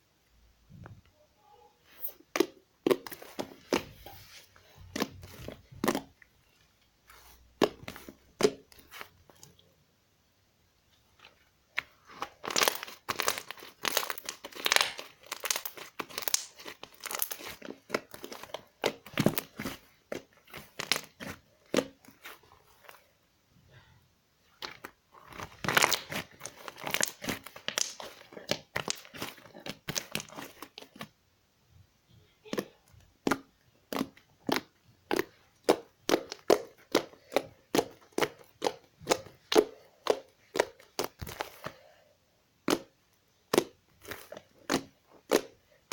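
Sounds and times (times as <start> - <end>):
slime clicking and popping: 12.4 - 22.0, 24.6 - 31.0, 32.5 - 41.5, 42.6 - 45.9.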